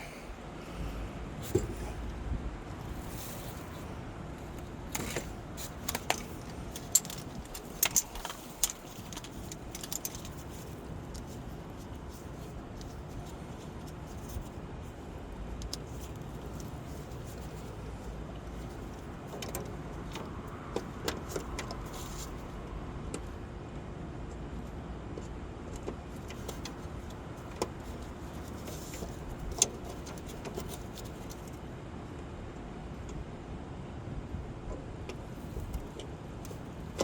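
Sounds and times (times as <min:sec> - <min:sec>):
metallic clinks and knocks of tools: 0:05.0 - 0:11.4.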